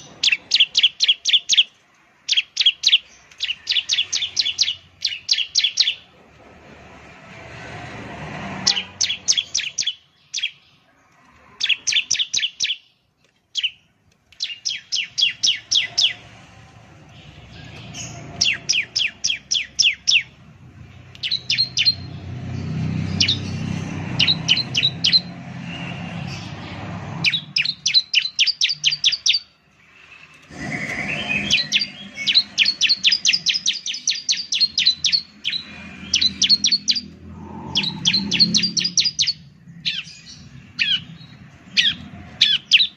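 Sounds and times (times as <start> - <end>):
bird singing sharp high notes: 30.5 - 42.9.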